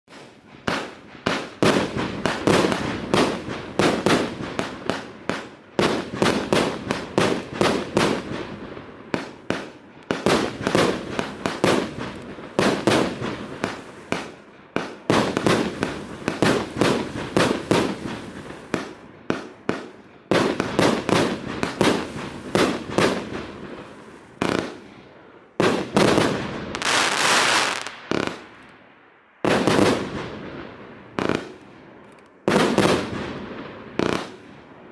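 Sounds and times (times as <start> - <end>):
firework cake firing: 0.1 - 25.0
firework hissing: 10.5 - 14.3, 15.4 - 18.9, 21.3 - 24.6, 26.7 - 28.0.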